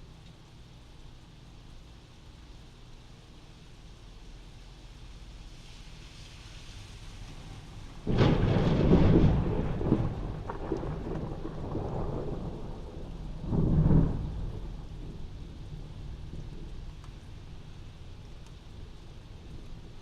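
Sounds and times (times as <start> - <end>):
steady rain: 0.0 - 20.0
thunder rumbling: 8.0 - 20.0.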